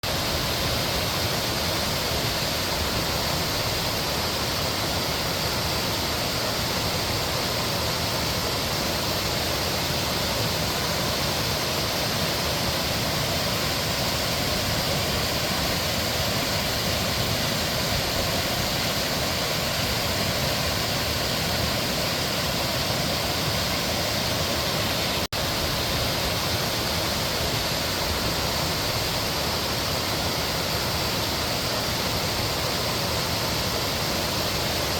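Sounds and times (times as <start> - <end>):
stream water rushing: 0.0 - 34.9.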